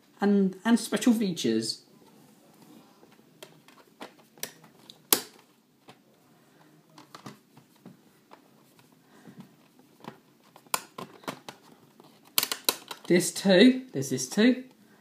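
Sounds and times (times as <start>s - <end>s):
plastic cases clicking: 3.4s - 6.0s, 6.9s - 8.4s, 9.5s - 13.1s.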